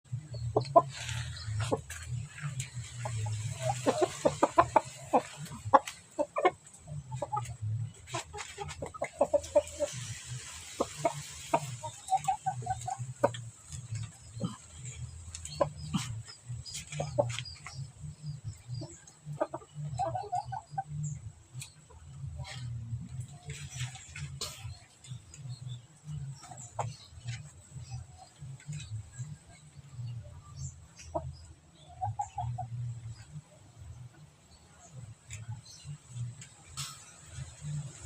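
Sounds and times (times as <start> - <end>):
steady low hum: 0.0 - 38.0
chicken clucking: 0.1 - 38.0.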